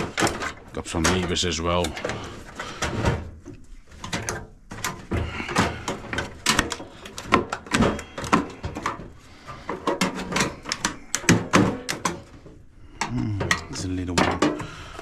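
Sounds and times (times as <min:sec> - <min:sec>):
hand tools clanking on metal: 0:00.0 - 0:03.1, 0:13.0 - 0:15.0.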